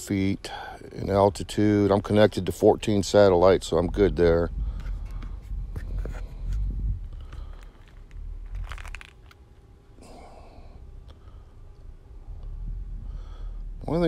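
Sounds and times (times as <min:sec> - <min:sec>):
low rumble: 0:00.8 - 0:14.0
crunching and crinkling handling noise: 0:04.7 - 0:10.0
clicks and rustles: 0:04.8 - 0:09.7.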